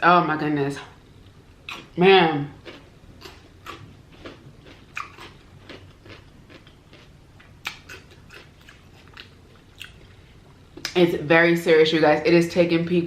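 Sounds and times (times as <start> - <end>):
person chewing food: 2.6 - 10.2.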